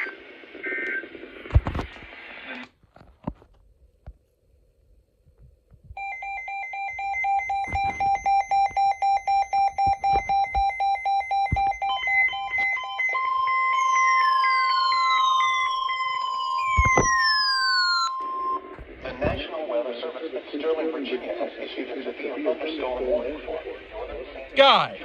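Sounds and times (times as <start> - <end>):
rapid beeping: 6.0 - 19.4
steady alarm tone: 6.0 - 19.4
falling whistle sweeps: 13.2 - 18.6.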